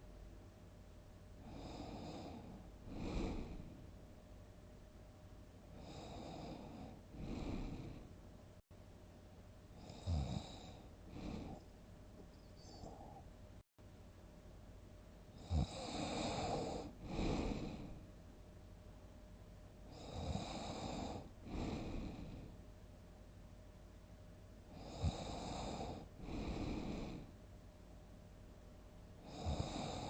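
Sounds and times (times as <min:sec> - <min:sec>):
person snoring loudly: 0:05.8 - 0:08.1, 0:09.8 - 0:11.6, 0:15.4 - 0:17.9, 0:29.2 - 0:30.0.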